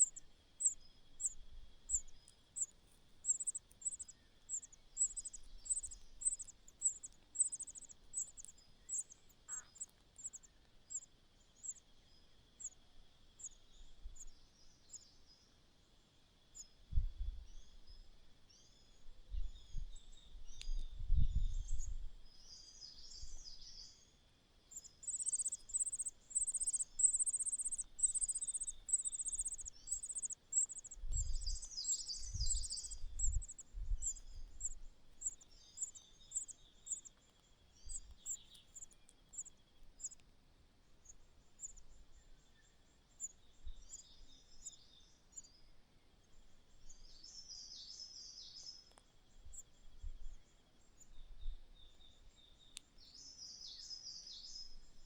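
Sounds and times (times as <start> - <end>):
chicks chirping: 0.0 - 11.0, 25.0 - 37.1
faint steady high hum: 0.0 - 55.0.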